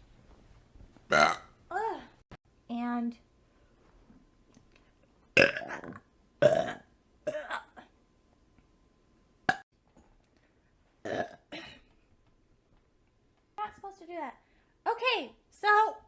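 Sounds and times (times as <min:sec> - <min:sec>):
woman burping: 0:01.1 - 0:01.6, 0:05.4 - 0:07.9, 0:11.0 - 0:11.9.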